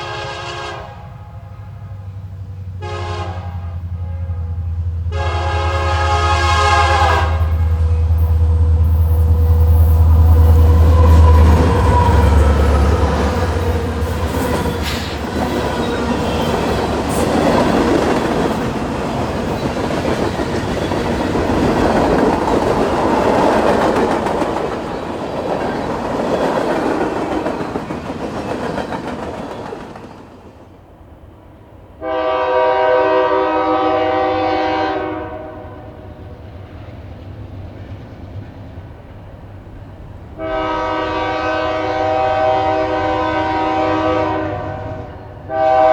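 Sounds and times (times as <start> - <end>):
locomotive air horn blast: 0.0 - 2.1, 2.8 - 18.1, 32.0 - 36.0, 40.4 - 45.9
freight train rumbling past: 0.0 - 45.9.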